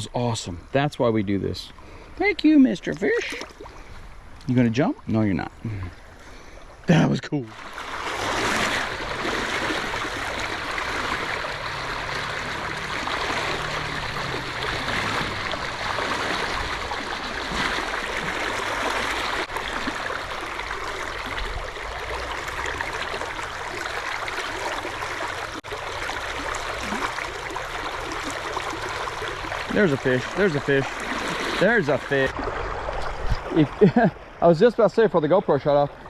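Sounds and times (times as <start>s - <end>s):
river water rushing: 6.9s - 33.1s.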